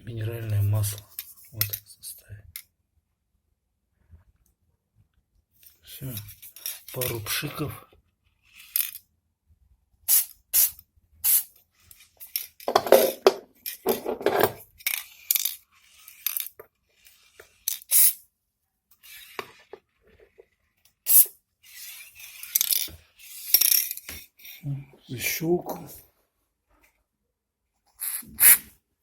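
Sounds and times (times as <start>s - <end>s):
metal parts clinking: 6.2s - 7.2s, 8.6s - 9.0s, 12.2s - 16.6s, 22.2s - 24.1s
aerosol can spraying: 10.1s - 11.5s, 21.1s - 21.3s.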